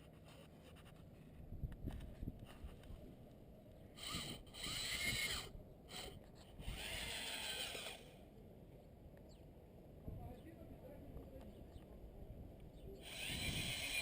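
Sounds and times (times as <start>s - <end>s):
small power tool motor whirring: 4.0s - 8.2s, 13.0s - 14.0s.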